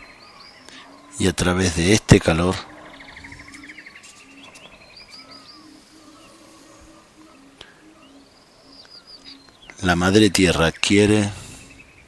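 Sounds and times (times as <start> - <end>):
bird trilling: 0.0 - 12.0
birds chirping and whistling: 0.0 - 12.0
soft low cooing: 2.1 - 9.5.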